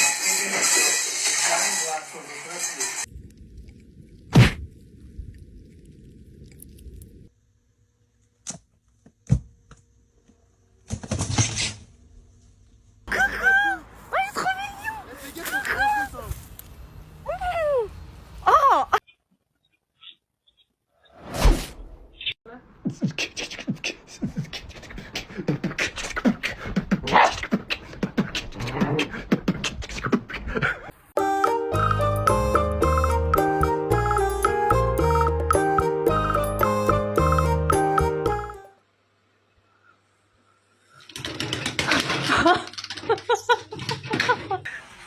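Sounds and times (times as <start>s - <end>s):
voice-like grunts and squeaks: 22.8s - 30.9s
tinkling music: 31.2s - 38.6s.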